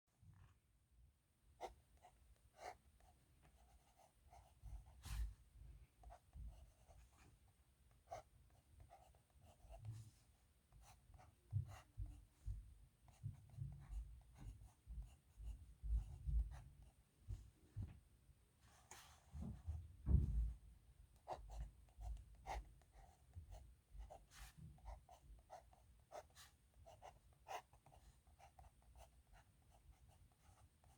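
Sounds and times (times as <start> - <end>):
soft low bumps: 19.4 - 20.6.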